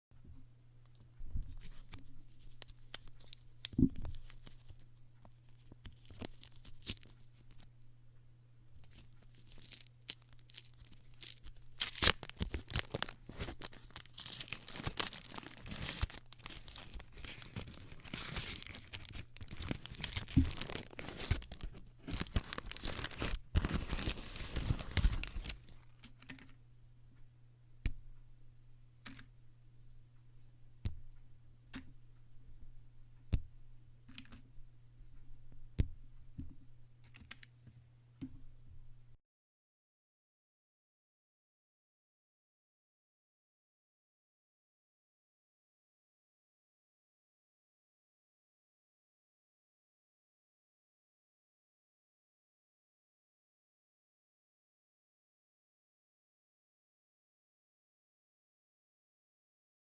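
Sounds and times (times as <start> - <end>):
wrapper tearing and crinkling: 5.9 - 7.6, 8.9 - 25.9.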